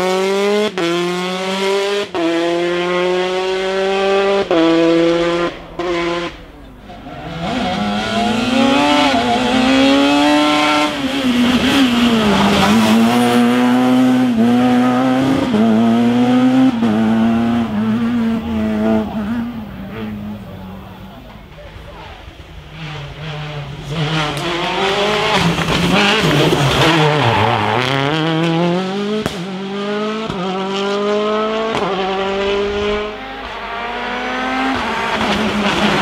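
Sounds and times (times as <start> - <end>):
rally car engine revving: 0.0 - 36.0.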